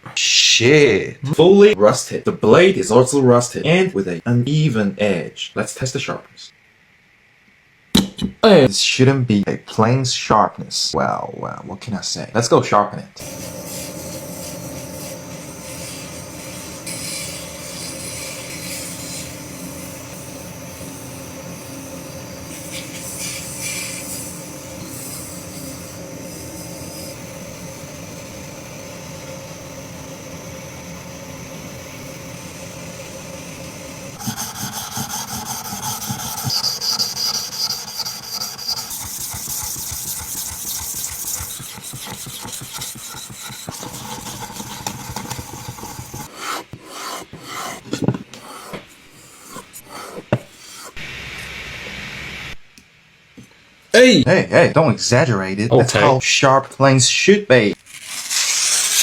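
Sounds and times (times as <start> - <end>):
blade scraping on sharpening stone: 13.2 - 20.9, 34.2 - 47.8, 48.4 - 51.0, 57.8 - 59.0.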